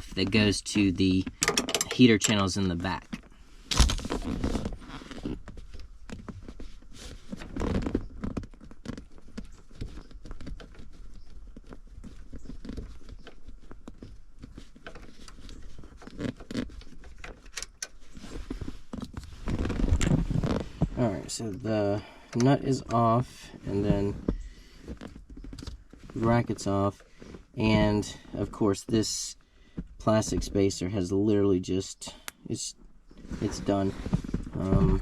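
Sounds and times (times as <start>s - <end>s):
hand tool clicks and metallic rattles: 1.3s - 2.4s.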